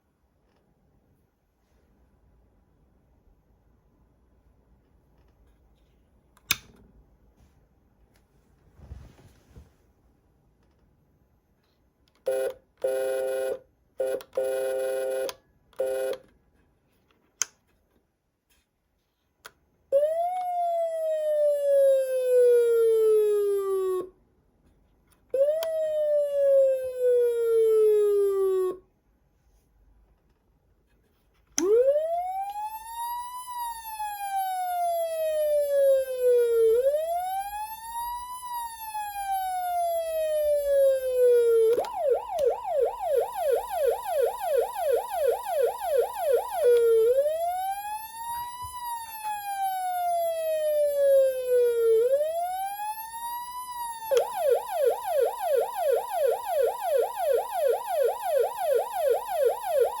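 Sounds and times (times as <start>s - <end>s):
electronic siren wail and yelp: 20.0s - 24.1s, 25.4s - 28.8s, 31.6s - 60.0s.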